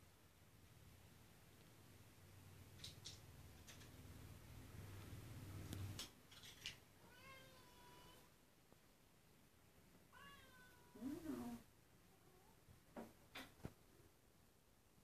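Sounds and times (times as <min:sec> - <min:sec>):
cat meowing faintly: 0:07.0 - 0:08.3, 0:10.1 - 0:12.6.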